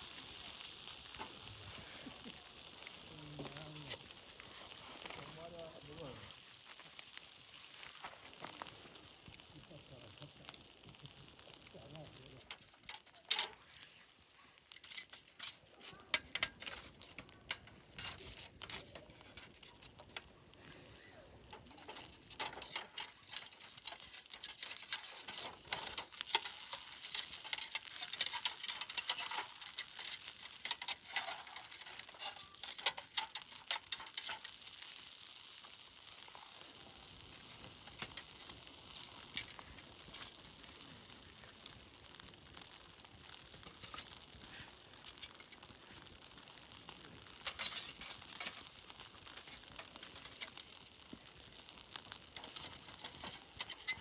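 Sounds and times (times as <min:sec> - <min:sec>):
food sizzling in a pan: 0:00.0 - 0:54.0
stirring clicks and taps: 0:10.4 - 0:13.6, 0:21.5 - 0:36.4, 0:46.9 - 0:54.0.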